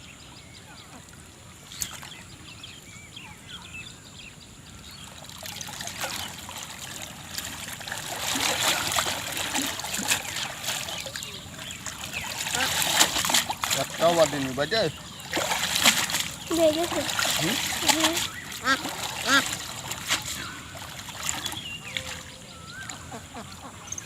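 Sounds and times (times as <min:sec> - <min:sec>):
water trickling and splashing: 0:01.0 - 0:02.9, 0:04.7 - 0:24.0.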